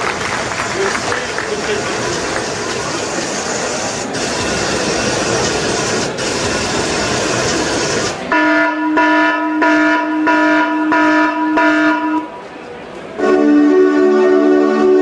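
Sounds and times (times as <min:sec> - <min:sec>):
train rushing rumble: 0:00.0 - 0:15.0
train horn chord: 0:08.3 - 0:12.3, 0:13.2 - 0:15.0.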